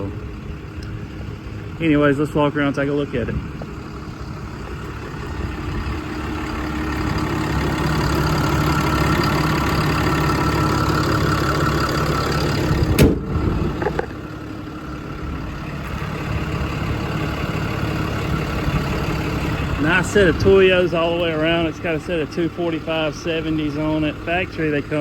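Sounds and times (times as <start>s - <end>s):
diesel engine idling: 0.0s - 25.0s
sharp knock: 13.0s - 13.3s.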